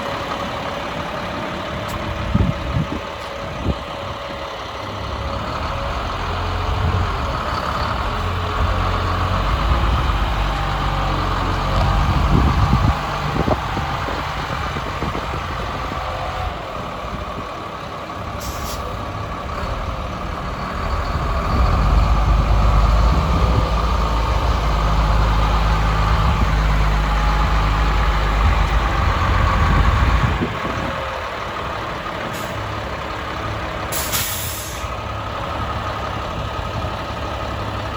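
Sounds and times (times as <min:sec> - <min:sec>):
truck diesel engine running: 0:00.0 - 0:37.9
air hissing: 0:33.9 - 0:34.9.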